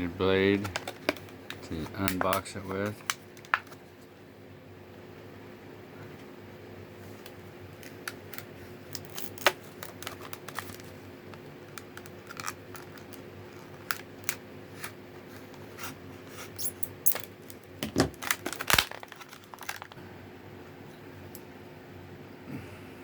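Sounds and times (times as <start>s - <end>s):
knife cutting plastic packaging: 7.8s - 10.9s, 11.7s - 20.0s.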